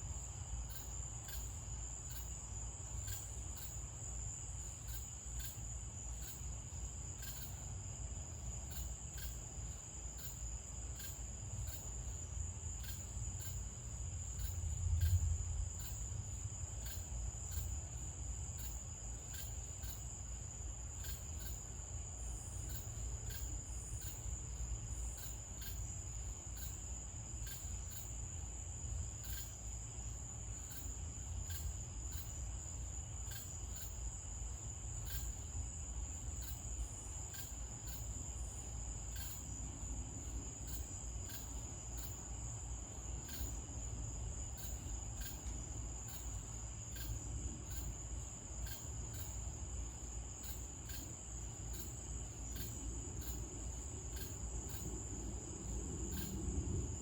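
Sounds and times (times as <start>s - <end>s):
cricket chirps: 0.0s - 57.0s
insects trilling: 0.0s - 57.0s
low steady rumble: 13.8s - 18.2s.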